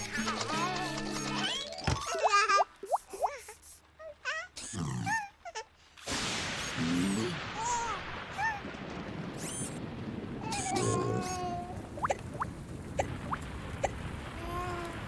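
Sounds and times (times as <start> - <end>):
cartoon pops: 9.3 - 9.8, 12.0 - 14.0.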